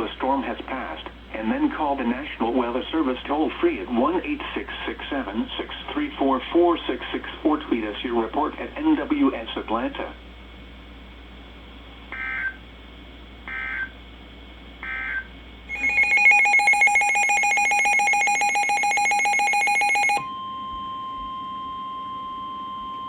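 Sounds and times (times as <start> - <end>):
steady high warning tone: 14.8 - 23.0.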